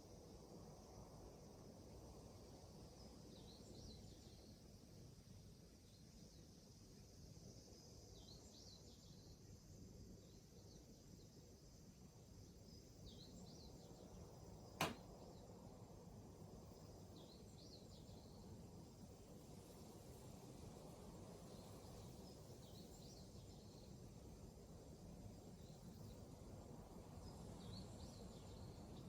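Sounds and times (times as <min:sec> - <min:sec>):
sharp click: 0:14.8 - 0:15.0.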